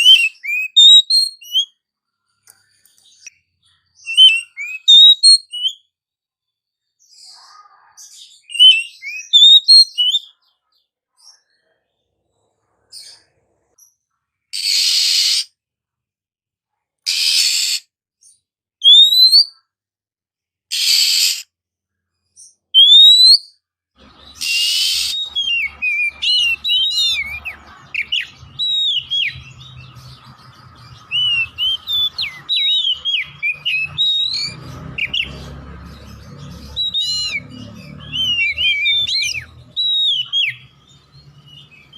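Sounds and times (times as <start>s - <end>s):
bird harsh rasping calls: 0.0s - 1.7s, 3.7s - 5.8s, 14.6s - 15.5s, 17.1s - 17.8s, 20.7s - 21.5s, 24.0s - 41.9s
bird whistled song: 0.0s - 1.8s, 3.1s - 5.9s, 8.1s - 10.6s, 14.6s - 15.5s, 17.1s - 19.6s, 20.7s - 21.4s, 22.4s - 41.9s.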